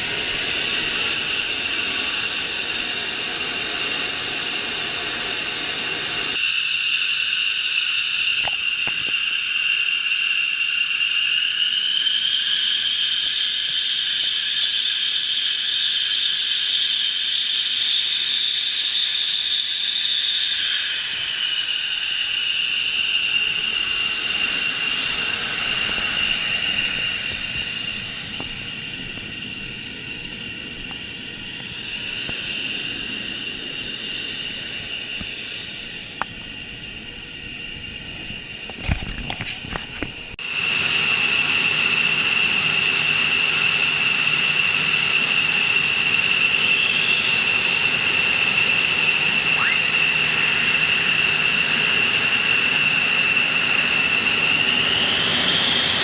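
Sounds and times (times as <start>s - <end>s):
jet engine whining with hiss: 0.0s - 56.0s.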